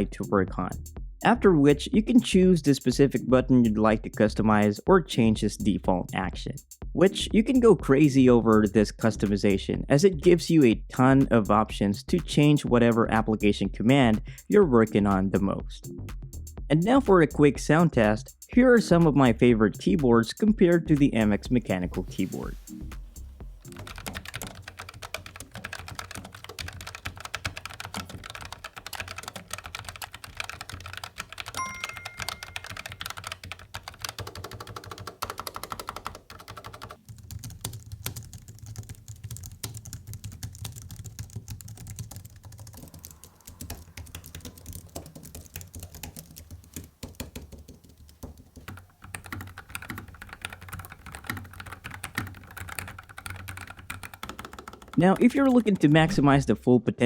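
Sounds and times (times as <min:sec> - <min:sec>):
fast typing on mechanical keyboards: 0:23.6 - 0:56.0.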